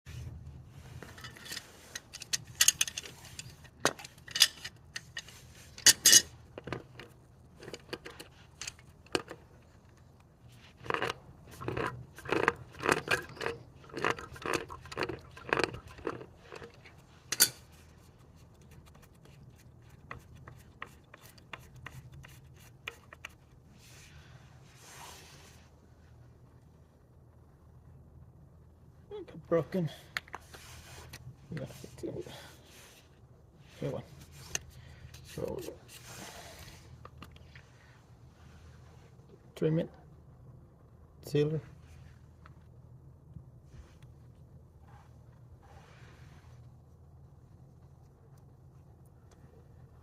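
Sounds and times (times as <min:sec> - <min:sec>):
soft rustle: 0:00.1 - 0:11.6, 0:16.2 - 0:28.0, 0:30.0 - 0:40.2, 0:41.4 - 0:50.0
scraping strokes: 0:30.4 - 0:37.0.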